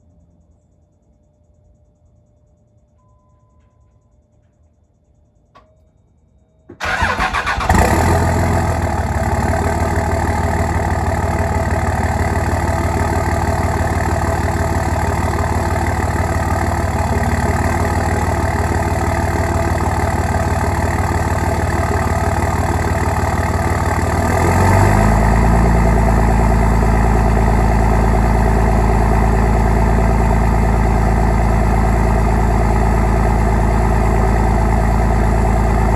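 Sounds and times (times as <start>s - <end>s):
brief tone: 1.0s - 6.8s
click: 5.5s - 5.9s
diesel engine cranking and running: 6.8s - 35.9s.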